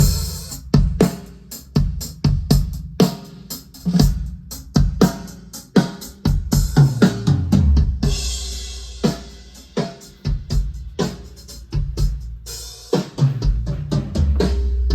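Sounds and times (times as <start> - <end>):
drum hits: 0.0 - 3.2.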